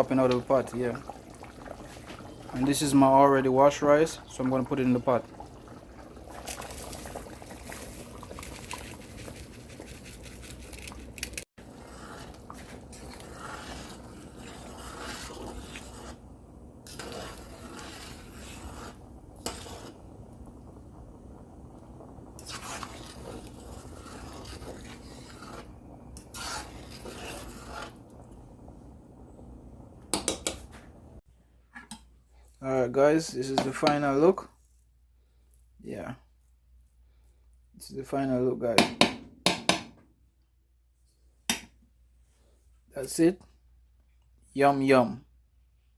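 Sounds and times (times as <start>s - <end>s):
spoon scraping in a pot: 5.7s - 20.1s, 22.1s - 28.3s
utensil knocking on pot: 38.8s - 40.0s.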